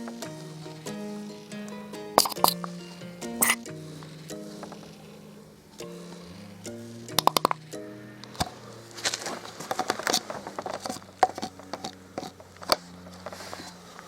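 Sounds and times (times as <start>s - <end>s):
soft background music: 0.0s - 14.0s
metal tools clicking and rattling: 2.2s - 2.7s, 3.4s - 3.7s, 7.2s - 7.6s.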